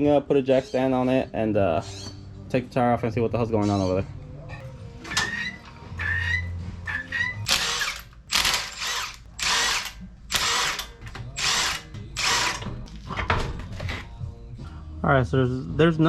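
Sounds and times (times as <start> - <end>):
impact wrench bursts: 7.2 - 12.7.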